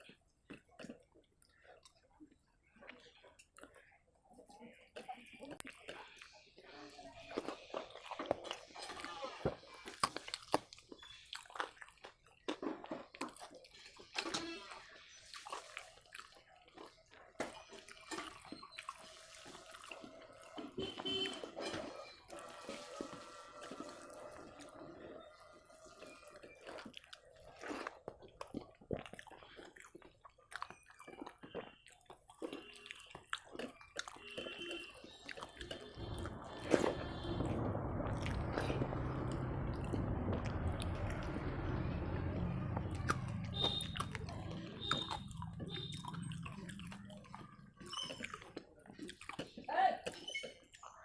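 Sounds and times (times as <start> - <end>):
wet squelches of eating by hand: 0.0 - 39.0, 42.6 - 51.0
low rushing noise: 35.9 - 46.9.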